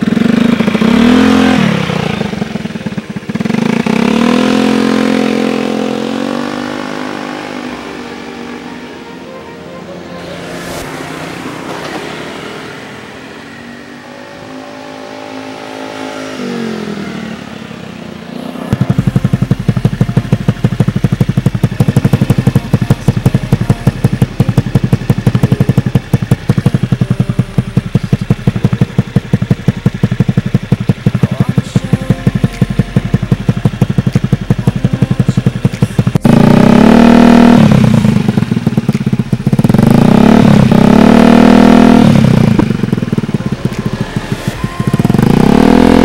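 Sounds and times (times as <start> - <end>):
scooter engine revving and idling: 0.0 - 46.0.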